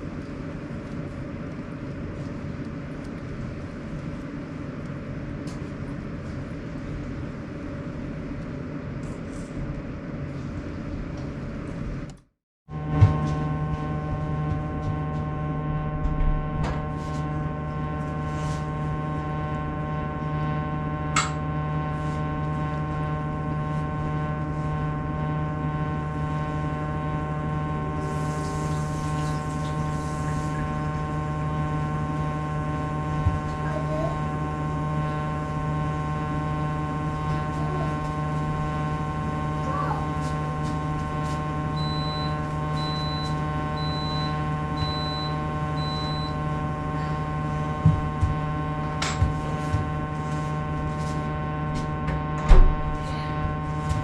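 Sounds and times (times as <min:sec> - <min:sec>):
air conditioner humming: 0:12.9 - 0:54.0.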